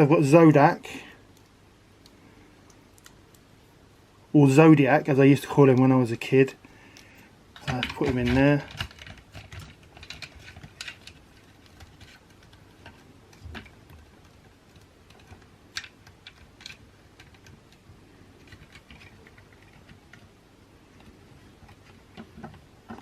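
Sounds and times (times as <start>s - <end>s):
plastic toy parts clicking: 7.6s - 17.8s, 18.4s - 20.3s.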